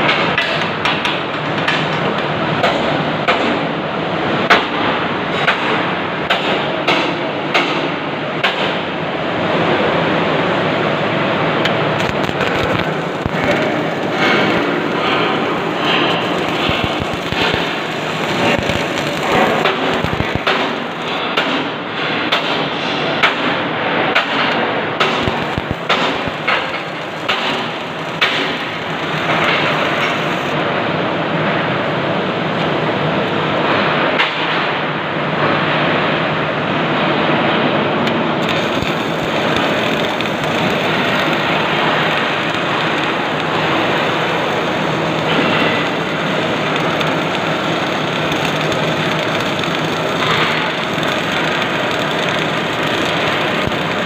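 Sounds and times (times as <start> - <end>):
welding arc crackling: 11.2 - 22.6, 24.2 - 30.6, 38.1 - 54.0
welding spatter pops: 11.6 - 21.7, 24.2 - 30.6, 38.4 - 54.0.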